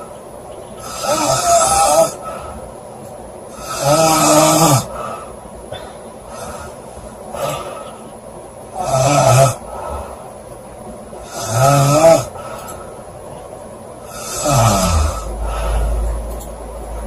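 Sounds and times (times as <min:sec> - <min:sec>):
woman snoring: 0:00.8 - 0:02.3, 0:03.5 - 0:05.1, 0:08.8 - 0:09.8, 0:11.2 - 0:12.4, 0:14.1 - 0:16.1
low rumble: 0:15.1 - 0:17.0.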